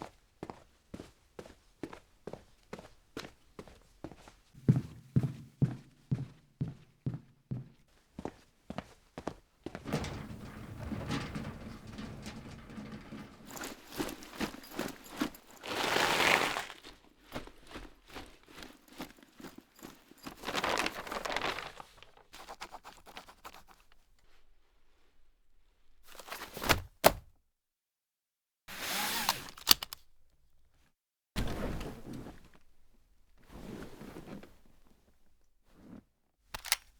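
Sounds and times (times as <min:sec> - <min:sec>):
dense rustling handling noise: 0:09.8 - 0:22.6.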